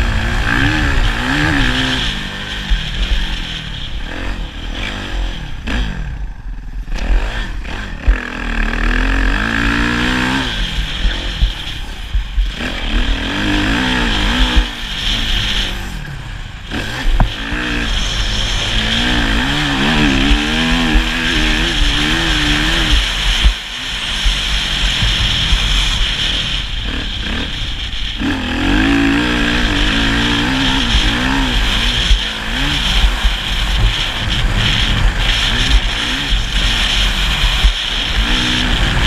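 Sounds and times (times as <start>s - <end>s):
motorcycle engine revving: 0.0s - 39.0s.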